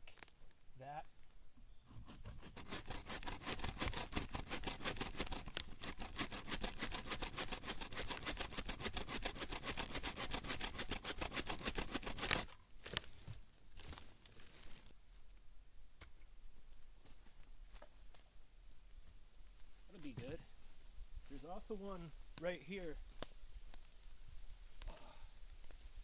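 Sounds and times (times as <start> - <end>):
hand saw cutting log: 1.9 - 12.6.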